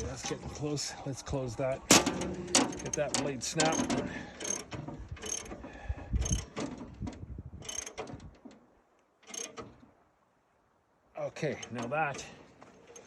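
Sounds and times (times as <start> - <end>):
tension screw cranking clicking squeak: 2.6 - 6.6, 7.6 - 8.2, 9.2 - 9.7, 11.6 - 13.0.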